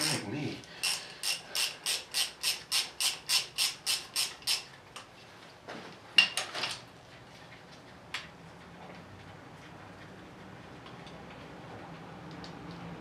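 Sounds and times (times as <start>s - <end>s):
ratchet wrench ratcheting: 0.0s - 4.7s.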